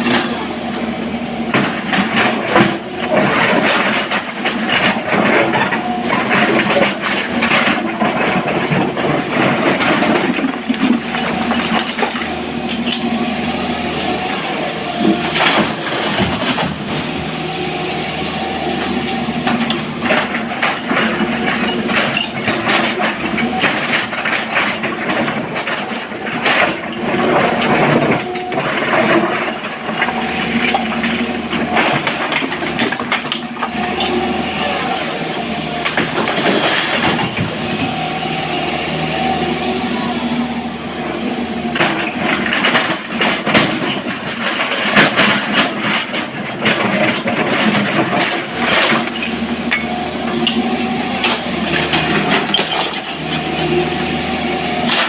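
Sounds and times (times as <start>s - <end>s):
excavator diesel engine: 0.0s - 55.0s
rocks crashing and clattering: 1.5s - 13.1s, 19.6s - 34.2s, 41.6s - 50.0s.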